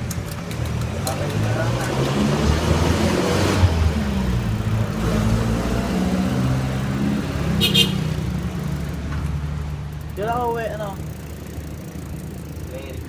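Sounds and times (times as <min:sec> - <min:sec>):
vehicle engine revving: 0:00.6 - 0:09.8.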